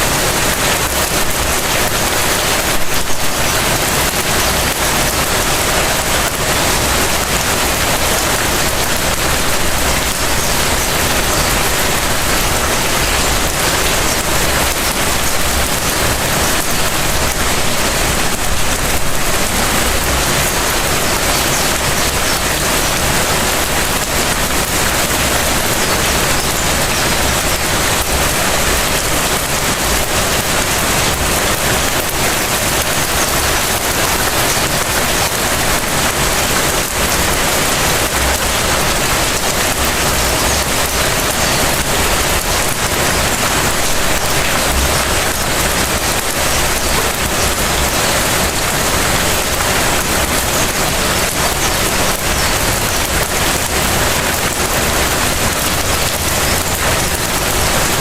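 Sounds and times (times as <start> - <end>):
light rain pattering: 0.0 - 58.0.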